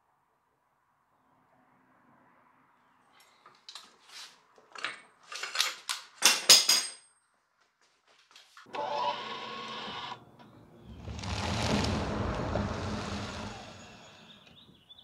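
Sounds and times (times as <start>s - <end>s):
small motor running: 11.0s - 14.4s.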